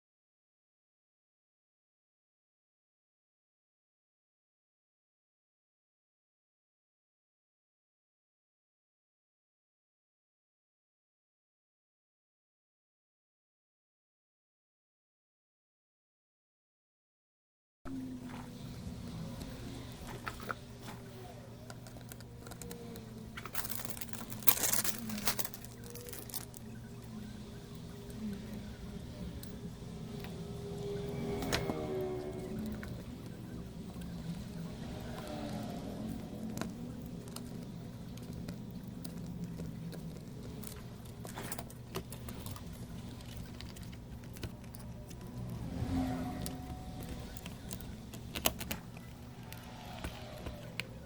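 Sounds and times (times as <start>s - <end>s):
faint electrical hum: 17.9s - 51.0s
clicks and crinkling handling: 19.0s - 28.7s.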